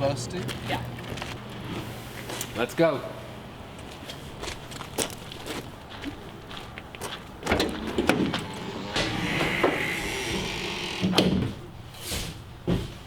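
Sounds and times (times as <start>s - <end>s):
door clunk: 7.4s - 11.5s
sliding door running on track: 7.4s - 11.5s.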